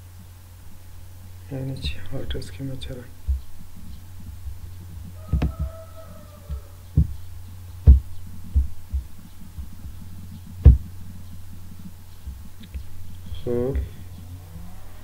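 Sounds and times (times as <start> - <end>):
low electrical hum: 0.0 - 15.0
sharp clicks and knocks: 3.2 - 5.8, 6.5 - 13.9.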